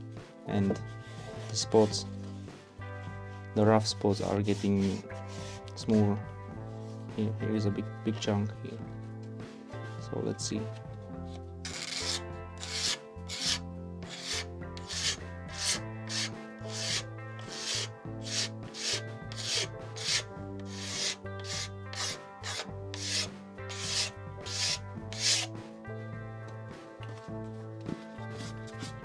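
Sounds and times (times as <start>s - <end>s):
background music: 0.0s - 29.0s
scraper rasping on plastic: 11.7s - 25.5s.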